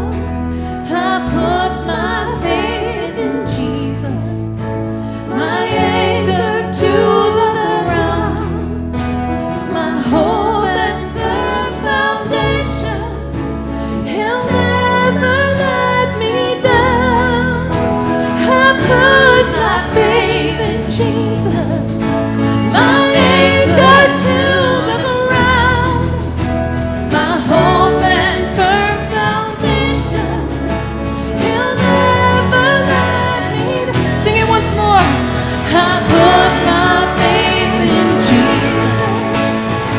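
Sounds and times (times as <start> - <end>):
worship band playing slow song: 0.0 - 39.9
person singing: 5.3 - 8.8, 14.0 - 39.9.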